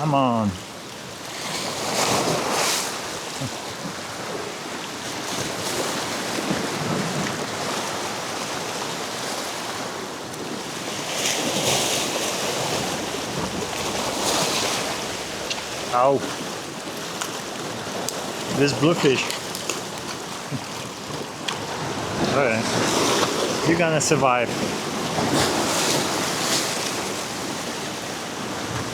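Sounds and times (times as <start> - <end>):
sea waves washing against rocks: 0.0 - 28.9
wind buffeting microphone: 11.4 - 28.9.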